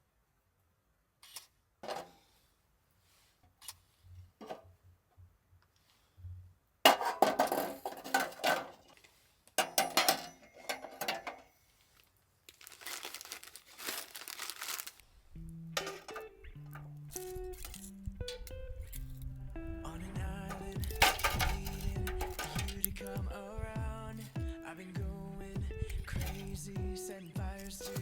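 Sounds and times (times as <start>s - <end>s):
utensils clattering: 6.9s - 8.8s, 9.6s - 11.5s, 15.8s - 16.4s, 20.5s - 22.9s, 26.2s - 26.6s
packaging crinkling: 11.8s - 15.2s.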